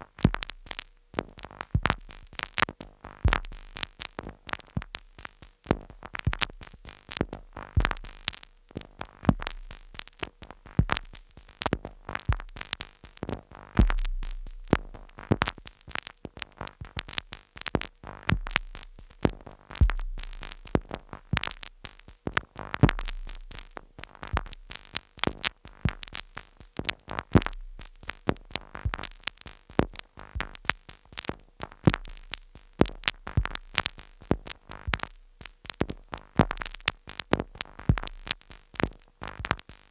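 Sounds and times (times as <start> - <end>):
deep bass thumps: 3.3 - 3.7, 7.8 - 8.1, 10.8 - 11.1, 13.8 - 15.5, 18.3 - 21.7, 22.8 - 24.6, 27.4 - 28.0.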